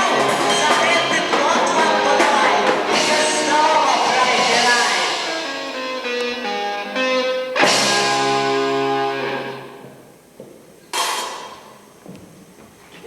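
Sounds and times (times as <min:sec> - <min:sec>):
guitar notes and strummed chord: 0:00.0 - 0:10.1.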